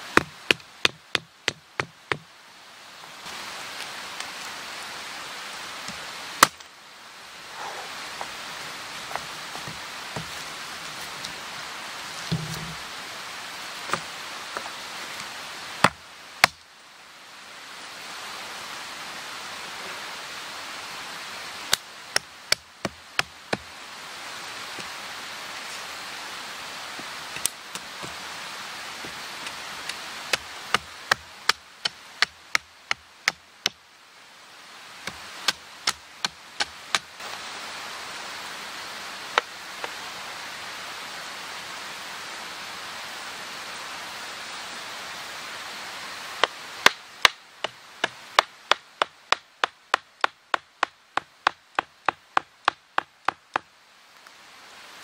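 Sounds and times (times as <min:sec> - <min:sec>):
steady rushing hiss: 0:00.0 - 0:55.0
axe chopping wood: 0:00.1 - 0:02.2, 0:15.8 - 0:16.6, 0:46.4 - 0:53.6.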